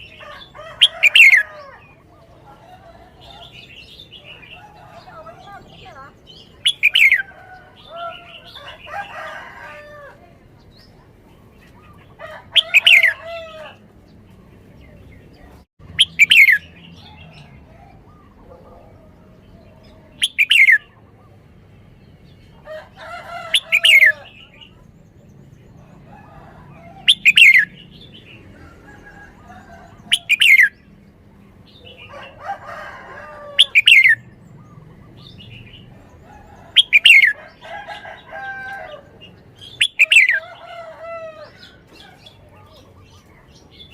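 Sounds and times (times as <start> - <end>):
soft bird chirping and warbling: 0.0 - 9.8, 14.5 - 22.6, 27.0 - 32.4, 33.3 - 37.6, 39.1 - 43.9
bird song phrases: 0.0 - 43.9.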